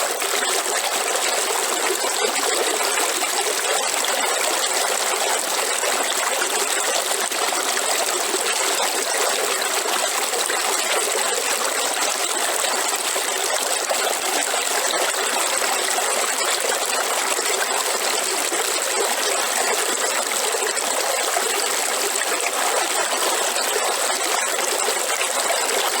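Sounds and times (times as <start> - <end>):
river water flowing and babbling: 0.0 - 26.0.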